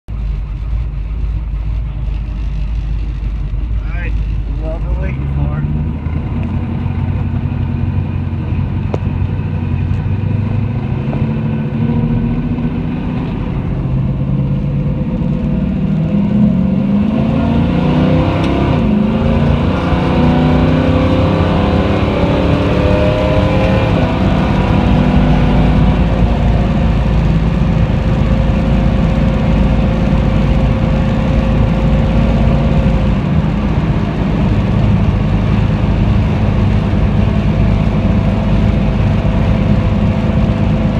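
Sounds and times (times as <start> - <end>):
car engine accelerating: 0.0 - 40.9.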